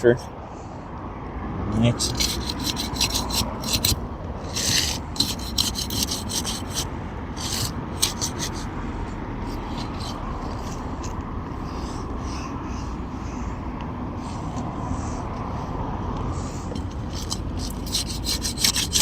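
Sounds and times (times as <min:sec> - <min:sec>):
metal tool scraping under shingles: 0:02.0 - 0:08.8, 0:09.4 - 0:11.2, 0:16.6 - 0:19.0.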